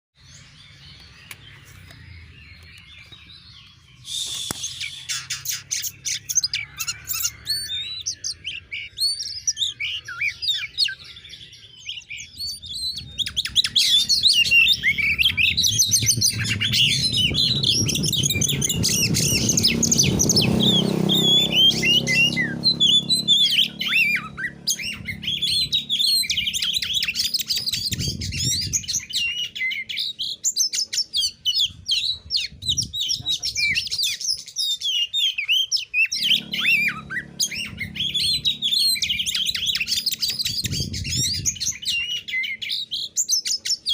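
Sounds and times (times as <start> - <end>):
magpie-robin singing: 0.2 - 43.9
low rumble: 14.0 - 20.8, 36.2 - 41.7.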